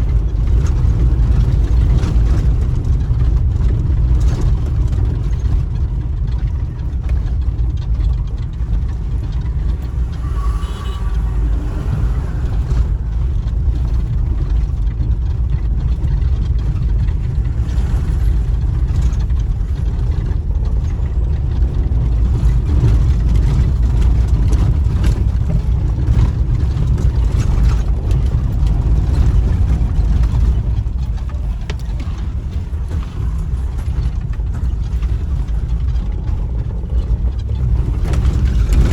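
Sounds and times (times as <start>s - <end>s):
vehicle engine and road rumble: 0.0s - 38.9s.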